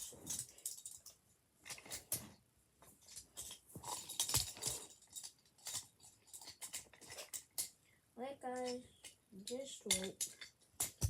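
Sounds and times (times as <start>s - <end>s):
wooden toy train pieces knocking: 3.1s - 7.8s, 8.5s - 11.0s.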